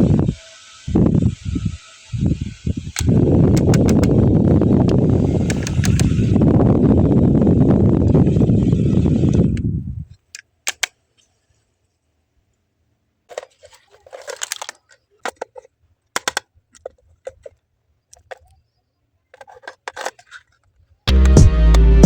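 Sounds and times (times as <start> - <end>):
small parts clicking and tapping: 2.8 - 4.2, 4.8 - 6.3, 9.2 - 11.3, 13.3 - 18.7, 19.3 - 20.8
rustling: 13.2 - 18.6
loud background music: 21.1 - 22.0.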